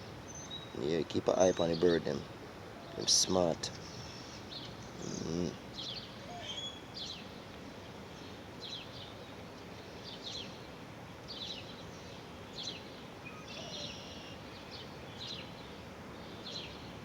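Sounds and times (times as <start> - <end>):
birds chirping: 0.0 - 7.3, 11.3 - 17.0
outdoor background noise: 0.0 - 17.0.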